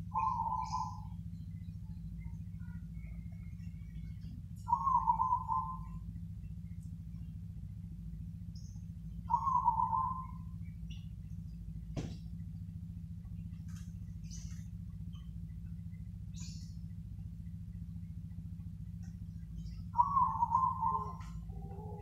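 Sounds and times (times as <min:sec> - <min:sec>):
dove cooing: 0:00.0 - 0:01.2, 0:02.3 - 0:06.1, 0:09.2 - 0:10.6, 0:19.8 - 0:22.0
steady low hum: 0:00.0 - 0:22.0.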